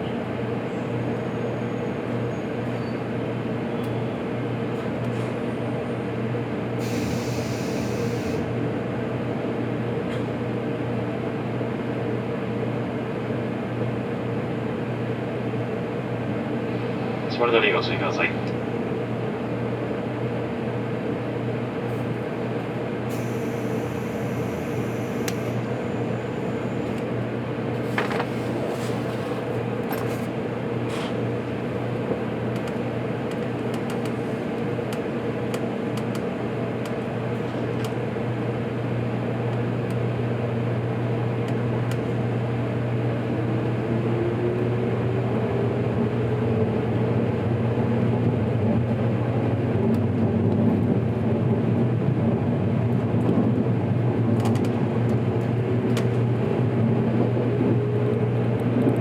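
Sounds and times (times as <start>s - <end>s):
train interior hum: 0.0s - 59.0s.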